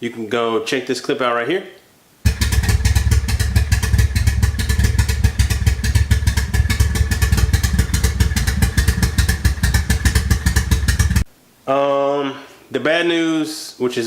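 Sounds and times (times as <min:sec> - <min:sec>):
car engine running roughly: 0:02.3 - 0:11.2.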